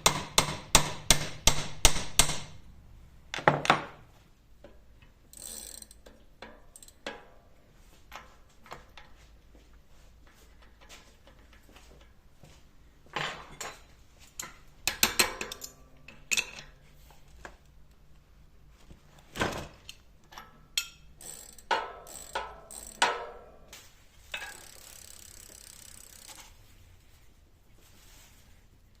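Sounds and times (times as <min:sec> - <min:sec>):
small metal parts clinking: 0:24.2 - 0:26.6.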